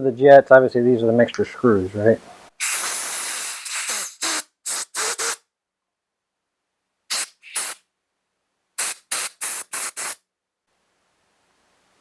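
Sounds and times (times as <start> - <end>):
compressed air blasts hissing: 2.6 - 5.4, 7.1 - 7.8, 8.8 - 10.2.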